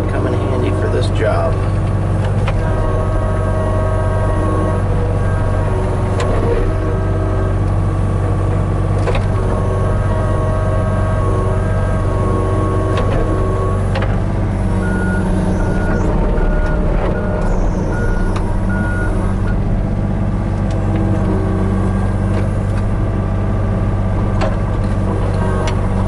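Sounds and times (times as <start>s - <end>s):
diesel excavator engine running: 0.0s - 26.0s
reversing alarm beeping: 14.6s - 19.6s.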